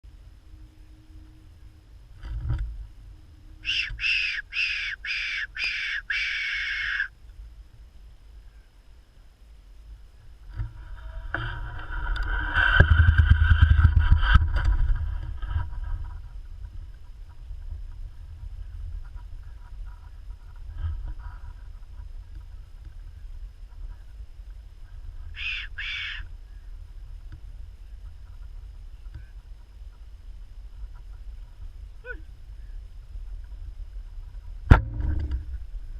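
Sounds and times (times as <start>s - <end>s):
low rumble: 0.0s - 4.6s, 6.6s - 35.9s
fox whistle squeals: 3.6s - 7.1s, 25.4s - 26.2s
low thump: 34.6s - 35.7s.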